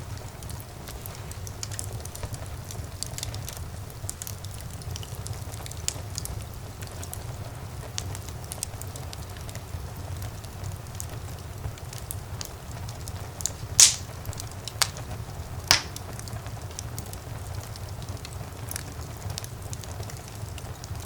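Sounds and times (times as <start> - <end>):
fire crackling: 0.0 - 21.0
fire flames rumbling: 0.0 - 21.0
sharp pops from fire: 0.1 - 7.2, 10.6 - 21.0.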